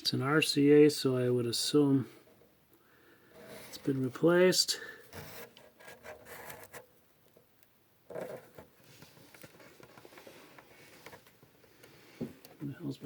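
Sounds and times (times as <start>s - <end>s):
loud scrape: 3.4s - 3.9s, 5.1s - 6.7s.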